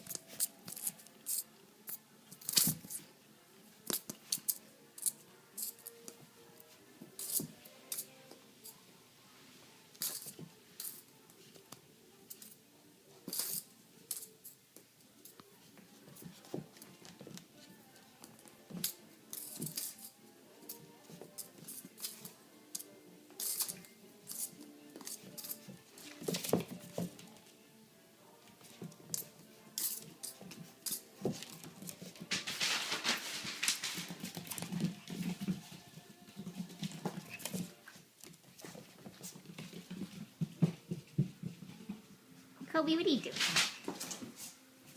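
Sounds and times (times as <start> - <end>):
puppy scratchy rustles: 29.9 - 41.8.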